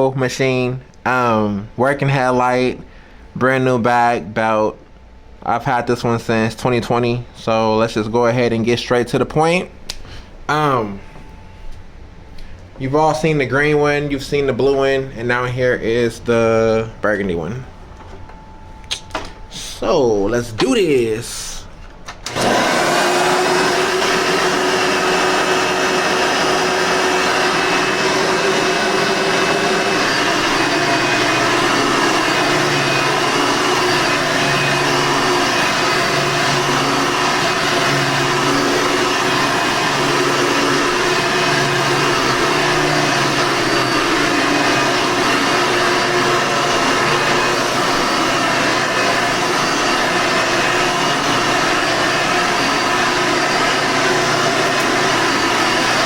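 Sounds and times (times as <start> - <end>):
vacuum cleaner running: 22.2 - 56.0.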